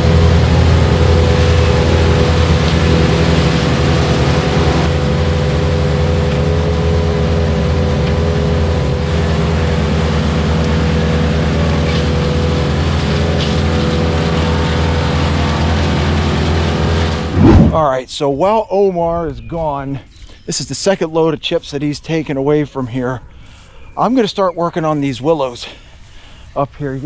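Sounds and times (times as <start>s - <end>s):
tractor engine running: 0.0s - 17.8s.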